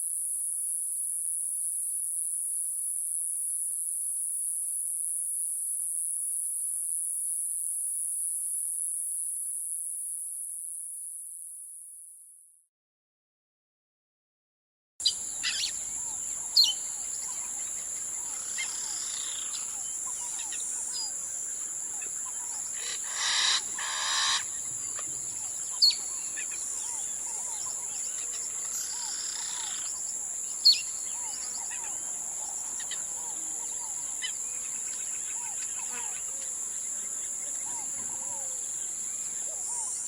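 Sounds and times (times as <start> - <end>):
birds chirping and calling: 15.0 - 36.2
high-pitched insect drone: 15.0 - 36.7.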